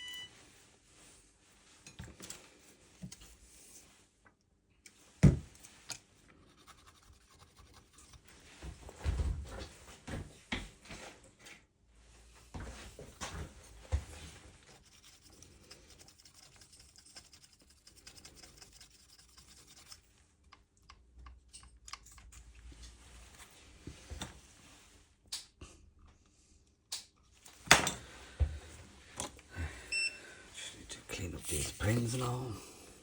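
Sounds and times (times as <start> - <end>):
small tool scratching circuit board: 6.5 - 8.3, 14.7 - 20.2.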